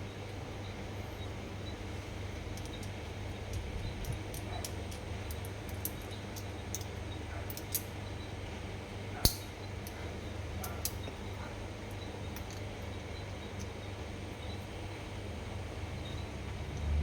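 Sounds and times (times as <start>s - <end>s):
clicks and taps of reel parts: 2.5s - 8.0s, 9.2s - 11.2s, 11.9s - 13.8s.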